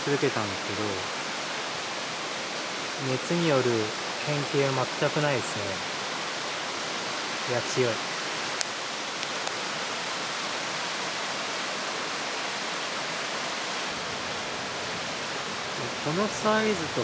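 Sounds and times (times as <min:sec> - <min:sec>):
fire flames hissing: 0:01.8 - 0:10.6
wood fire crackling: 0:03.1 - 0:05.9, 0:07.4 - 0:10.3.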